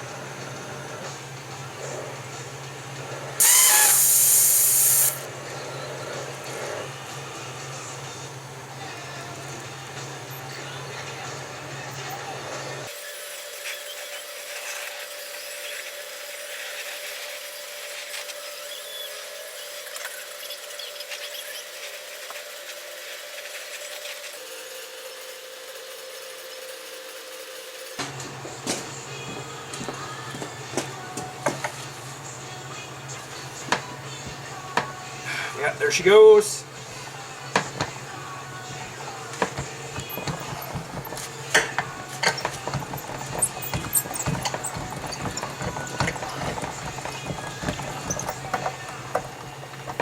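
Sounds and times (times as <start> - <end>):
power tool whining: 3.4 - 5.3, 39.4 - 50.0.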